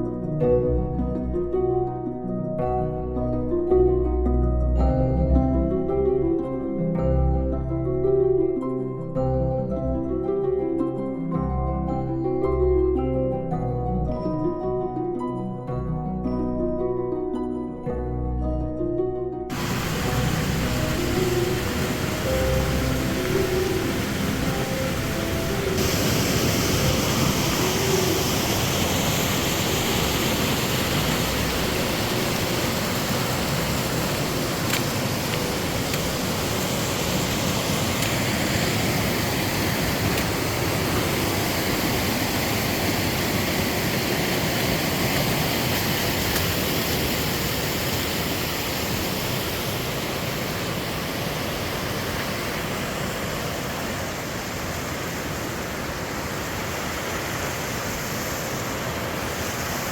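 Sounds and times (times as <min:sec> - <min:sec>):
fast-flowing water rushing: 0:19.5 - 0:59.9.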